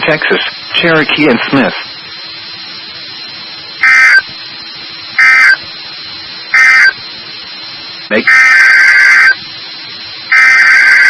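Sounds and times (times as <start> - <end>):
harsh digital buzzes: 0.0 - 11.0
radio hiss and hum: 0.0 - 11.0.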